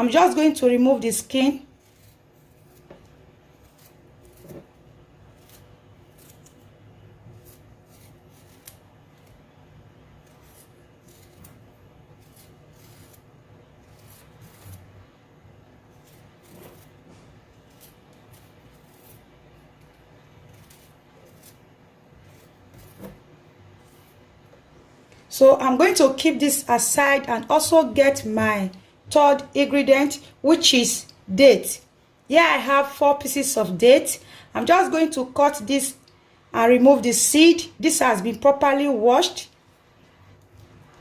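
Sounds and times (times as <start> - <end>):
ginger peeling scrapes: 1.5 - 24.4.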